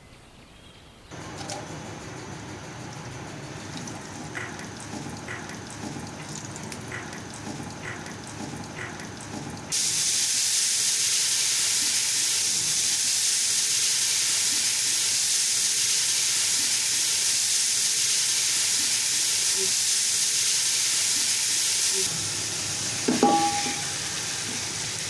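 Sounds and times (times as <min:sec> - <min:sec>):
cooking pot hissing: 0:09.7 - 0:25.0.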